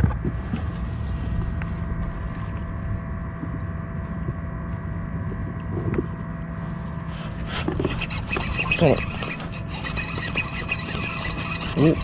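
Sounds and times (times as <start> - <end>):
wind buffeting microphone: 0.0 - 6.5
boat engine rumbling: 0.0 - 12.0.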